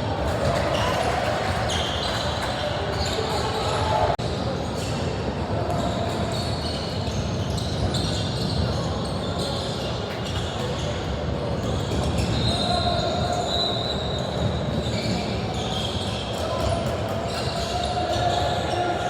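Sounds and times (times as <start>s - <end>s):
murmur of voices: 0.0s - 19.0s
shoe squeaks: 5.8s - 19.0s.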